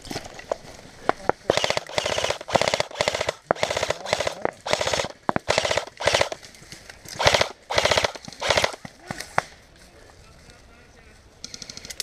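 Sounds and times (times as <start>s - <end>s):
airsoft rifle automatic bursts: 1.5s - 6.4s, 7.2s - 8.9s.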